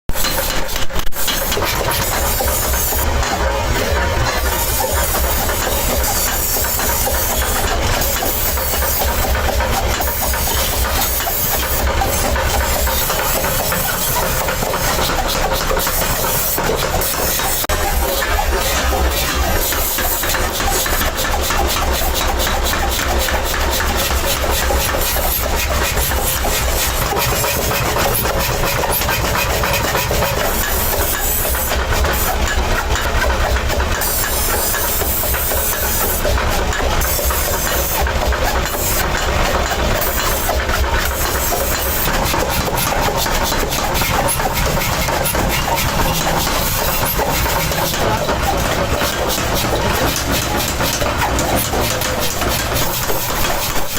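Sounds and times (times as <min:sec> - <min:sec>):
rapid dense clatter: 0:00.1 - 0:53.9
low machinery hum: 0:01.5 - 0:53.9.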